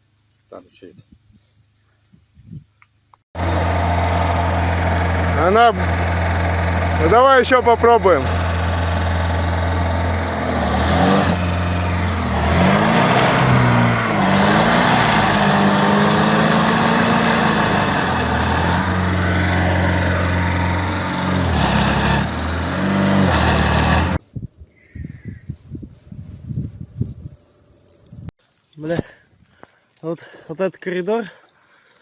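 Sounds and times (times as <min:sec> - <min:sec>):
vehicle engine revving: 0:03.4 - 0:24.2.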